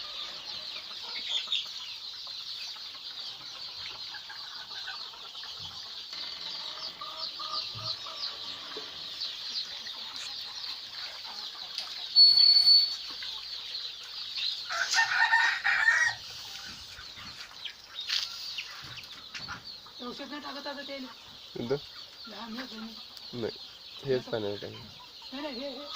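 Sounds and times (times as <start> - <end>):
chickens clucking: 0.0 - 25.9
chicks peeping: 0.0 - 25.9
rooster crowing: 14.7 - 16.2.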